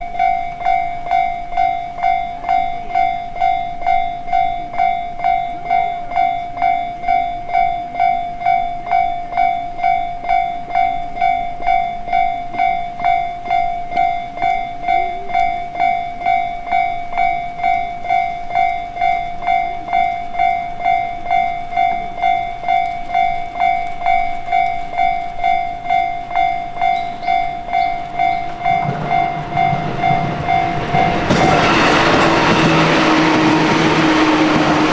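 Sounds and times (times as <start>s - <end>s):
level crossing warning bell: 0.0s - 34.9s
approaching train rumble: 26.2s - 34.9s.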